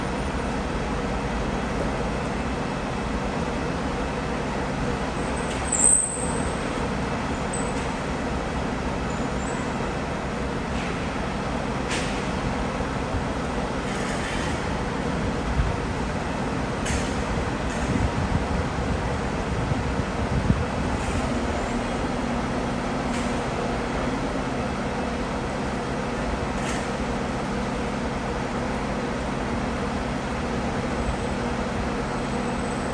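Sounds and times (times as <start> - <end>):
diesel engine running: 14.8 - 32.9.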